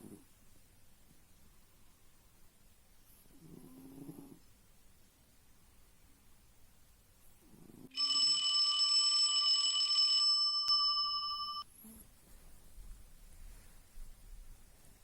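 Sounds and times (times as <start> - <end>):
alarm-like ringing tone: 8.0 - 11.7.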